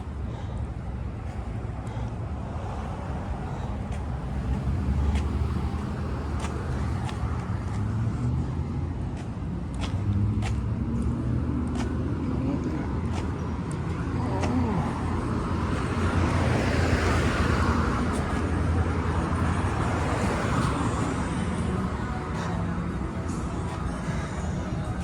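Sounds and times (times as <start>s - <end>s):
road traffic hum: 0.0s - 25.0s
vehicle passing close by: 13.9s - 25.0s.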